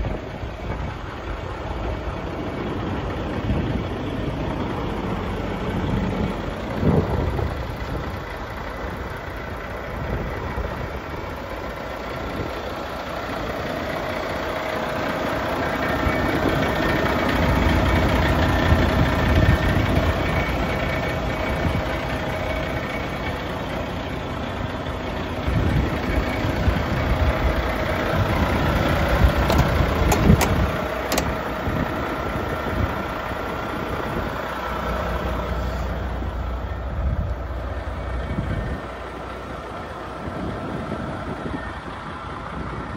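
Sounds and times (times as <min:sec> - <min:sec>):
diesel truck engine running: 0:00.0 - 0:42.9
sharp clicks: 0:29.4 - 0:31.4.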